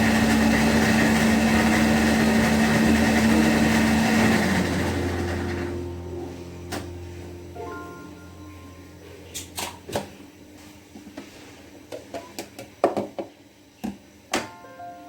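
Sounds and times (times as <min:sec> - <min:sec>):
faint background music: 0:06.0 - 0:09.6, 0:14.4 - 0:15.0.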